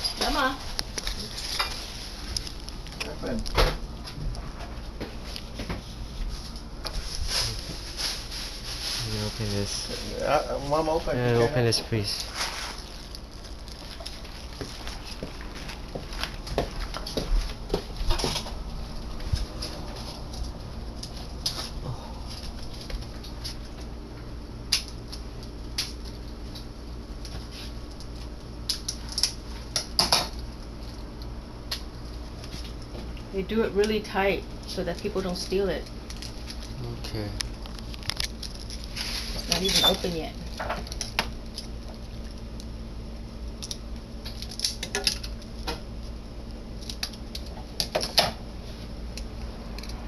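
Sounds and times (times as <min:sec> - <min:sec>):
plastic packaging crackling: 0:00.0 - 0:04.0, 0:06.3 - 0:23.8, 0:34.9 - 0:42.8, 0:43.4 - 0:45.6
steady low hum: 0:00.0 - 0:50.0
plastic packaging clicks and crackles: 0:12.1 - 0:18.4, 0:37.4 - 0:38.9, 0:43.5 - 0:45.8, 0:46.8 - 0:48.3.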